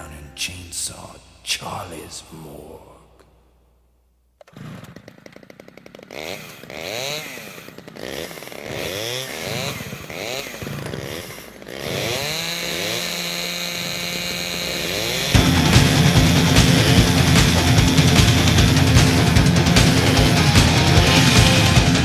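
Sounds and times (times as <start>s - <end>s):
chainsaw revving: 4.4s - 22.0s.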